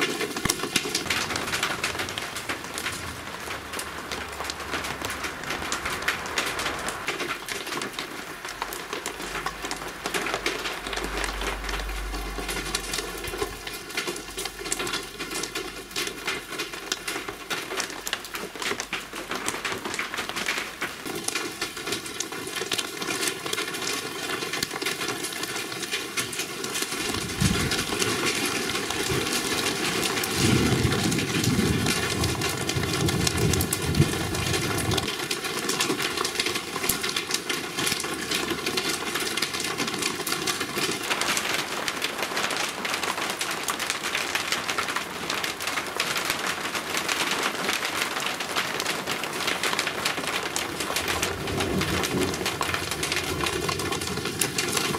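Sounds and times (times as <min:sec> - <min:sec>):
large raindrops pattering: 0:00.0 - 0:54.9
low rumble: 0:10.8 - 0:13.7.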